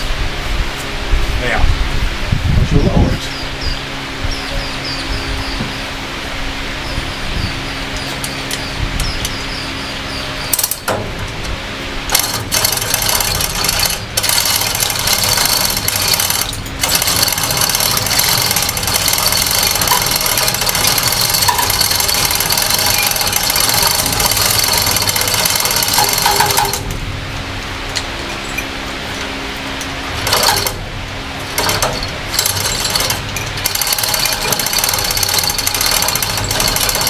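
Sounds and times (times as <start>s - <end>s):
chain hoist ratcheting: 10.5s - 10.9s, 12.1s - 27.0s, 30.2s - 30.8s, 31.5s - 37.0s
chain clattering: 12.2s - 26.9s.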